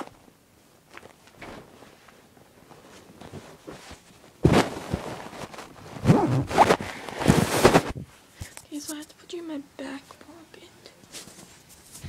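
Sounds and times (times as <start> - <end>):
clothing rustling on microphone: 0.0 - 9.0.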